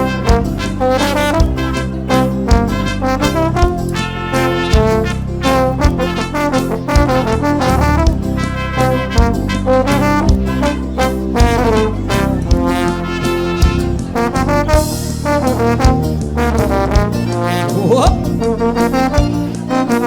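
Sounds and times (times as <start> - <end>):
instrumental dance music: 0.0 - 20.0.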